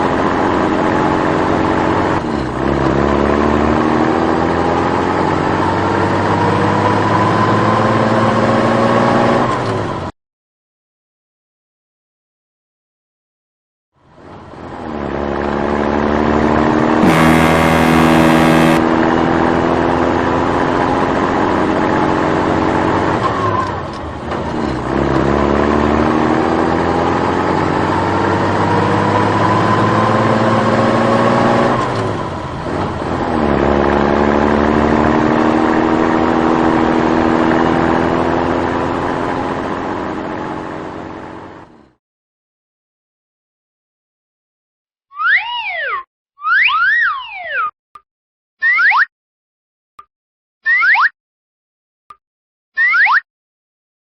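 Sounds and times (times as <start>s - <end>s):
engine accelerating through gears: 0.0s - 10.1s, 14.0s - 42.0s.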